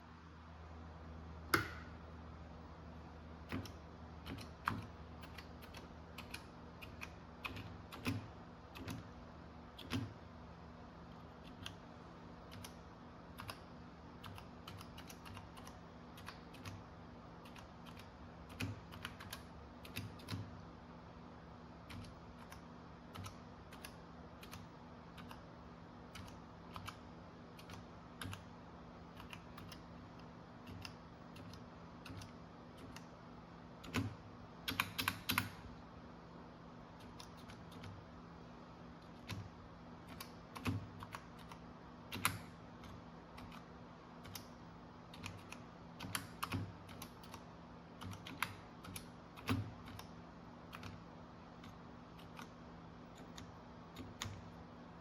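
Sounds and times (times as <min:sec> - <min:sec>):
steady low hum: 0:00.0 - 0:55.0
keyboard keys clicking: 0:17.4 - 0:20.5, 0:33.8 - 0:35.6, 0:39.2 - 0:44.5, 0:45.1 - 0:47.4, 0:48.0 - 0:50.1.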